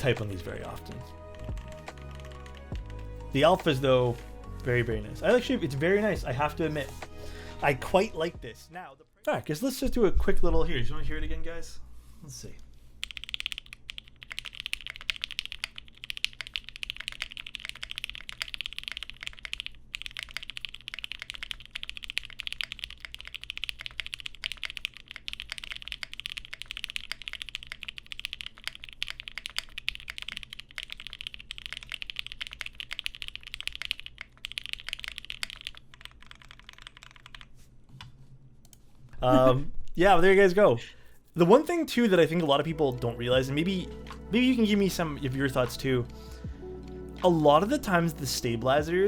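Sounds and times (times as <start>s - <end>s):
fast typing on mechanical keyboard: 0.2s - 3.1s, 13.0s - 37.5s.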